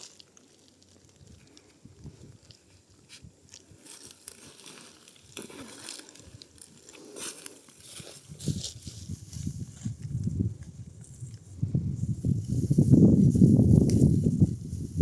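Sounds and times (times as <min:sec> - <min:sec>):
sickle cutting dry wheat stalks: 0:03.1 - 0:15.0.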